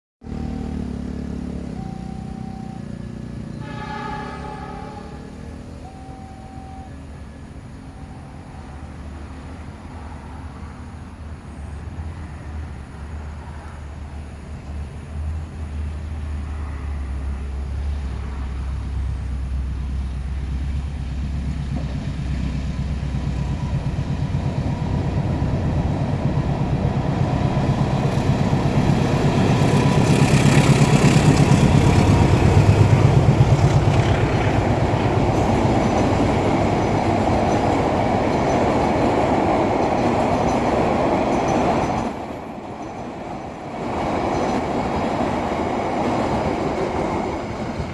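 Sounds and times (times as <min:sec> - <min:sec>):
train rumble: 0:00.2 - 0:47.9
train wheels clattering on rails: 0:20.7 - 0:47.9.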